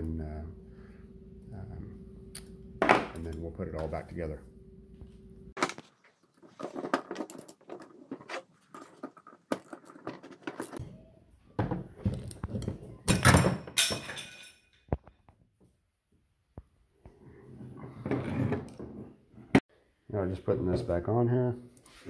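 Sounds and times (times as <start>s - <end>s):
metal parts clinking and clattering: 5.7s - 10.8s, 13.1s - 14.9s.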